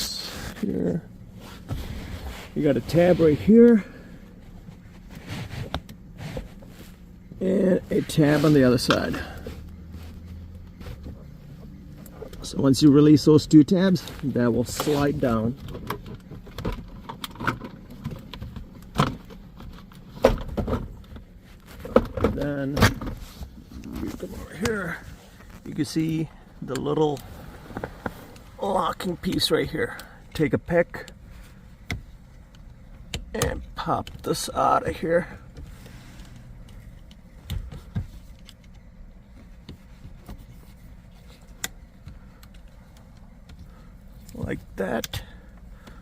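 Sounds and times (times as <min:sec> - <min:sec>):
low steady hum: 0:00.0 - 0:46.0
gear shift knob clicks and knocks: 0:15.5 - 0:24.8.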